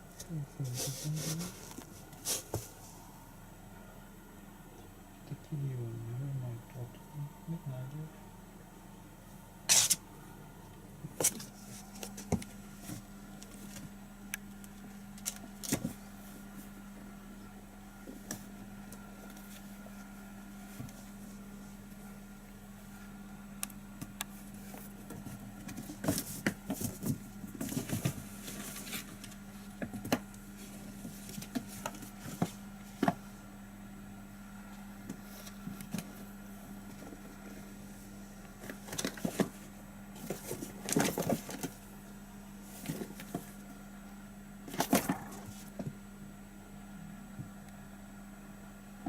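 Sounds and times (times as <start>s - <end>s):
steady low hum: 0.0s - 49.0s
kittens scuffling and tapping: 11.1s - 14.0s, 24.0s - 33.2s, 38.4s - 41.9s, 42.6s - 43.7s, 44.7s - 46.0s.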